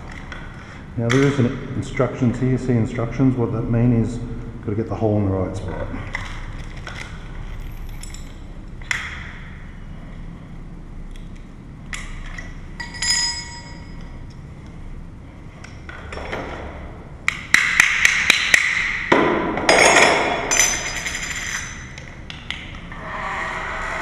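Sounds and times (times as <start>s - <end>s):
metal parts rattling: 6.1s - 8.5s, 19.7s - 22.1s.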